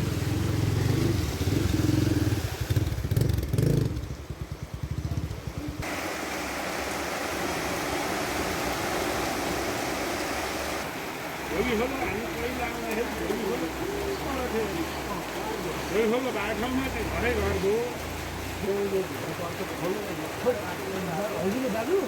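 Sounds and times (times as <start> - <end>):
motorcycle engine running: 0.0 - 5.8
floodwater rushing: 0.0 - 22.0.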